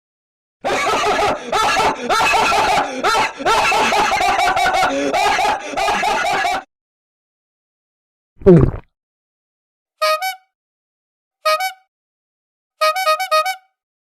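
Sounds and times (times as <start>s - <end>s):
high-pitched snickering laugh: 0.7s - 6.7s.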